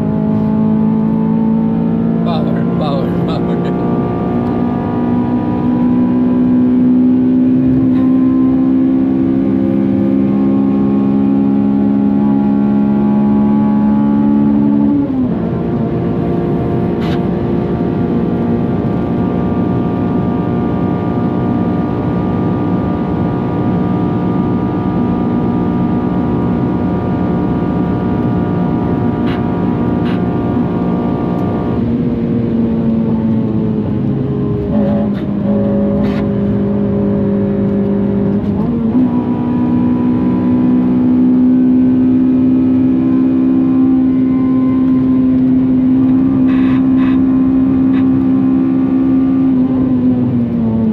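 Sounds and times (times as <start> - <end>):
car engine revving hard: 0.0 - 50.9.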